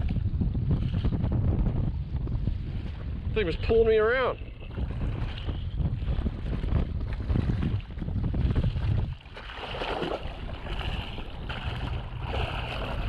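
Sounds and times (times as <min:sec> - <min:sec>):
wind buffeting microphone: 0:00.0 - 0:13.0
water sloshing and splashing: 0:04.4 - 0:13.0.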